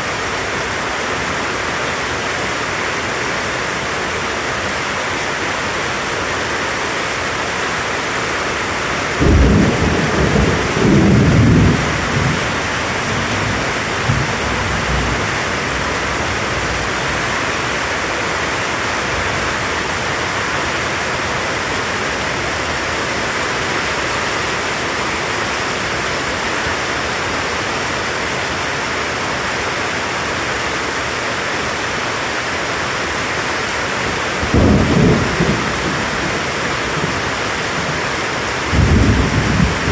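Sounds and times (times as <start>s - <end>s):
heavy rain hissing: 0.0s - 39.9s
thunder clap rumbling: 9.1s - 17.7s, 34.4s - 39.9s.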